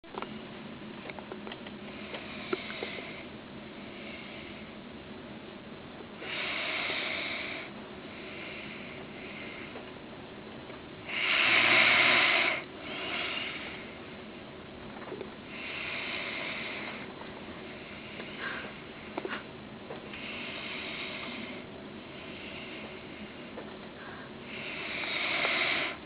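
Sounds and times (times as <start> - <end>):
man snoring: 11.1 - 13.8, 24.5 - 26.0.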